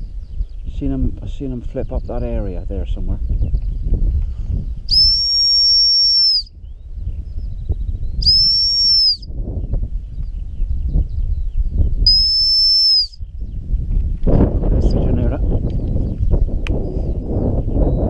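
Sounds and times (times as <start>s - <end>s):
wind rumble on microphone: 0.0s - 18.0s
dog whistle blasts: 4.9s - 6.5s, 8.2s - 9.3s, 12.1s - 13.2s.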